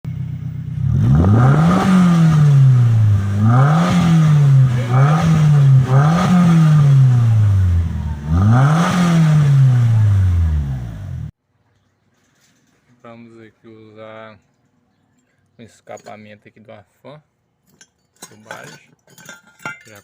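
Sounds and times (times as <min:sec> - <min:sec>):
car engine revving: 0:00.1 - 0:11.3.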